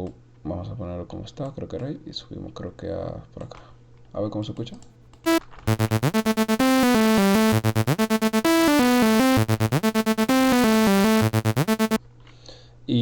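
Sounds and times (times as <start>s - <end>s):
synthesizer melody loop: 5.3s - 12.0s.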